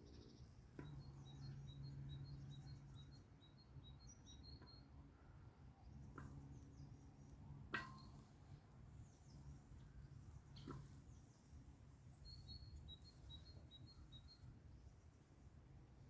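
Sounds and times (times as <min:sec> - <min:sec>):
faint bird chirps: 0:12.1 - 0:15.0.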